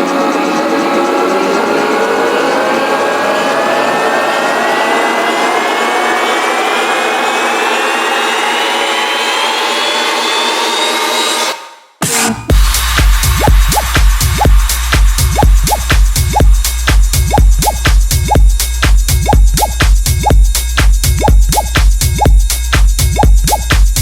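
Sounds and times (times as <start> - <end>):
noisy riser sweep: 0.0 - 11.6
heavy kick drum and bass: 12.5 - 24.0.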